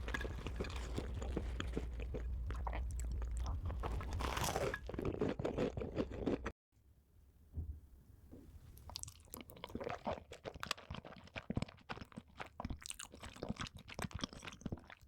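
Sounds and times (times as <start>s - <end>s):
crunchy chewing: 0.0s - 6.5s.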